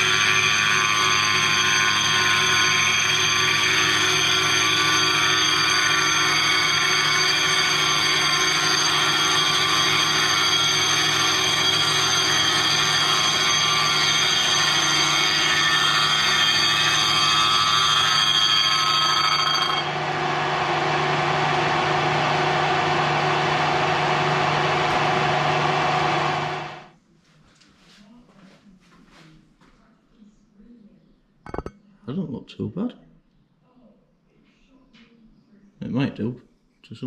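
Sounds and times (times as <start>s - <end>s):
milling machine cutting steel: 0.0s - 26.9s.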